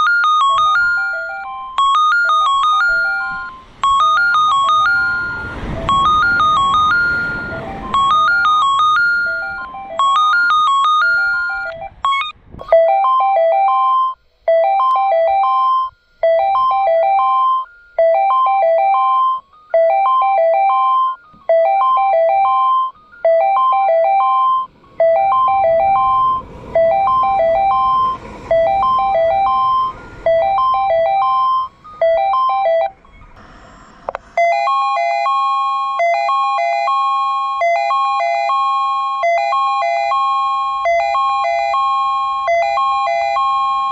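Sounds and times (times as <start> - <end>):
low train rumble: 0.0 - 12.6, 23.9 - 35.2
platform warning chime: 0.0 - 33.4, 34.4 - 43.9
two-tone warning chime: 0.0 - 33.4, 34.3 - 43.9.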